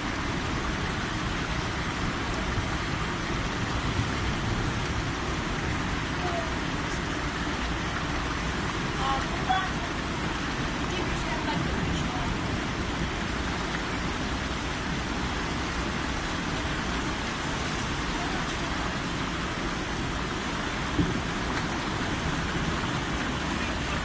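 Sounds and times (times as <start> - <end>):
heavy rain pouring: 0.0 - 24.0.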